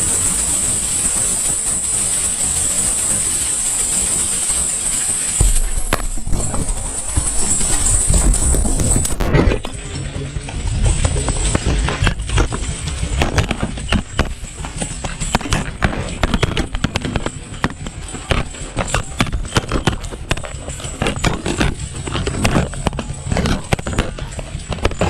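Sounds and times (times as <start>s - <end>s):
machine clattering and banging: 0.0s - 25.0s
low rumble: 5.4s - 15.2s.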